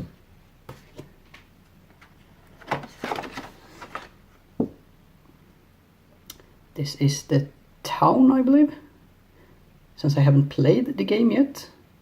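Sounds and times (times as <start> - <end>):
paper and cardboard rustling: 2.0 - 4.2.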